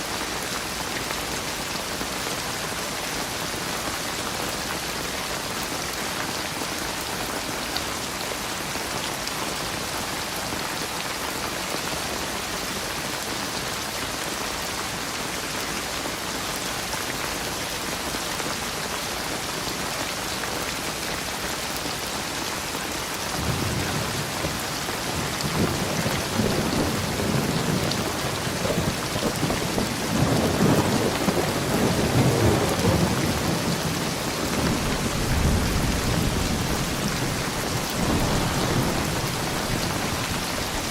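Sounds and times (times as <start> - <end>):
steady rain: 0.0 - 40.9
rolling thunder: 23.4 - 40.9.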